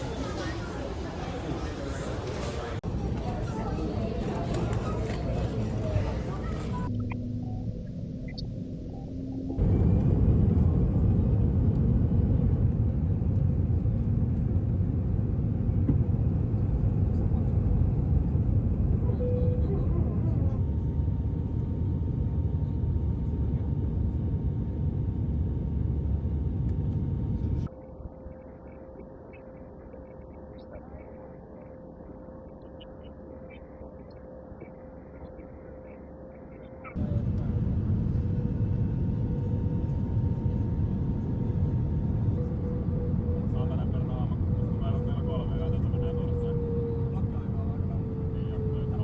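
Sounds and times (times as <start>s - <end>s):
aircraft cabin drone: 0.0s - 27.7s, 37.0s - 49.0s
vehicle engine rumbling: 37.0s - 49.0s.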